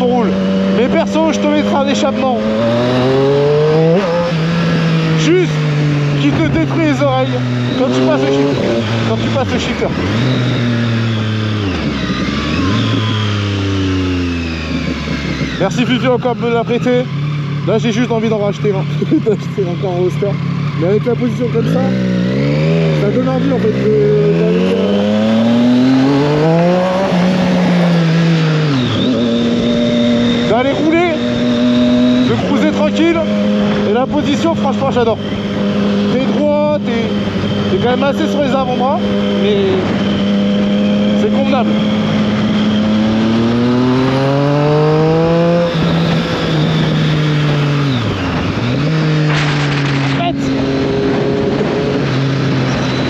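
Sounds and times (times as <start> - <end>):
motorcycle engine revving: 0.0 - 53.0
wind noise: 2.3 - 16.0, 33.2 - 53.0.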